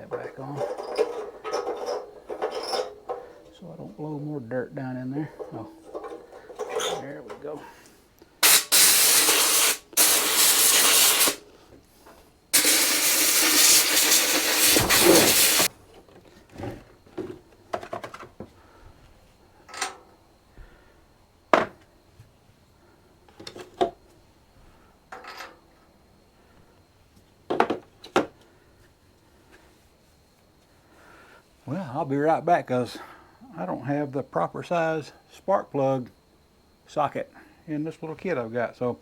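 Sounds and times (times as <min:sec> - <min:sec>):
hand tools clicking and knocking: 0:00.0 - 0:03.6, 0:05.2 - 0:07.6
compressed air hissing blasts: 0:08.4 - 0:11.5, 0:12.6 - 0:15.7.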